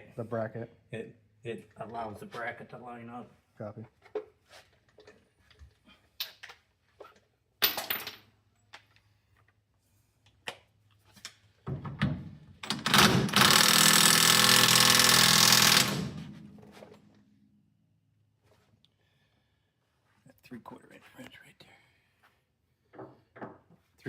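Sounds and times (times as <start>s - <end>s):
power tool spinning: 12.7s - 16.6s.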